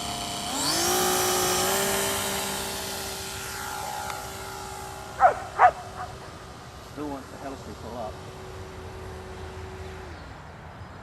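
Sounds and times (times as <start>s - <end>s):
model plane motor whining: 0.0s - 11.0s
dog yipping: 5.2s - 6.1s.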